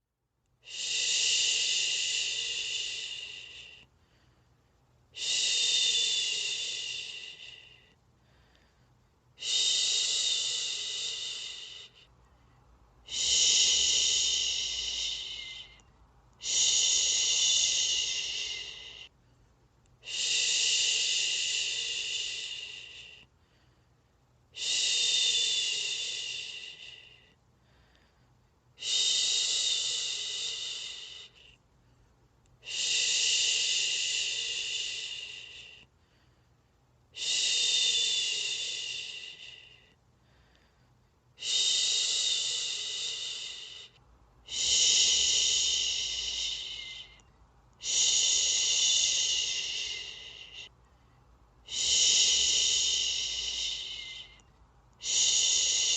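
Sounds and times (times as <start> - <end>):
person breathing: 0.6 - 55.9
person shushing: 47.8 - 50.7, 51.7 - 54.4, 55.0 - 55.9.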